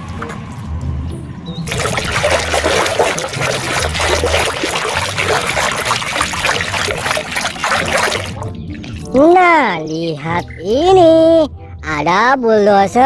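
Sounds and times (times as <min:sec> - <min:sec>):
water splashing and trickling: 0:01.6 - 0:11.2.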